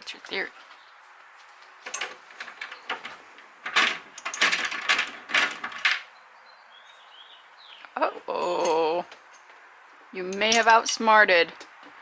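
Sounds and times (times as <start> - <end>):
metal parts clattering and scraping: 1.8 - 6.1.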